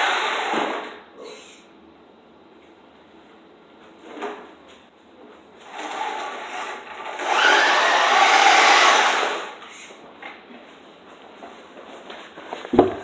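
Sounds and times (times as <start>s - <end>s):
rc car motor whine: 5.8s - 9.6s.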